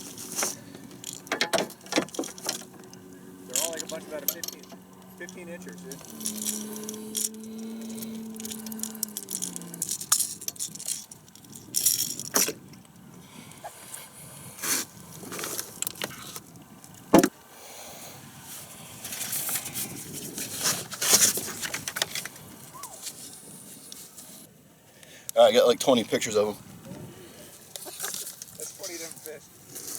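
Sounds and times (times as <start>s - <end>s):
fishing gear rattling and clicking: 0.0s - 13.1s, 15.1s - 17.3s, 19.1s - 24.1s, 27.6s - 29.9s.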